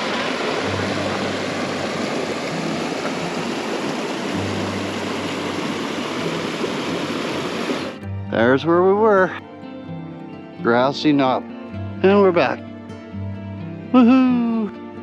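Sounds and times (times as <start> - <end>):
creek water rushing: 0.0 - 9.4.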